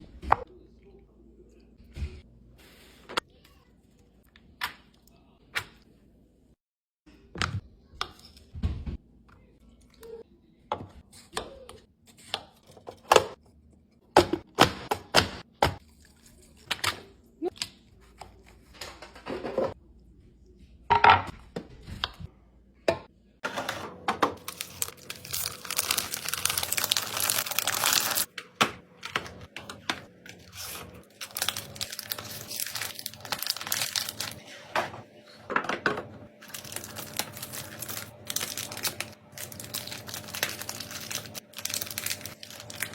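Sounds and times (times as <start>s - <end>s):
plastic packaging tearing and crinkling: 24.4s - 28.3s, 30.2s - 34.4s, 36.4s - 42.9s.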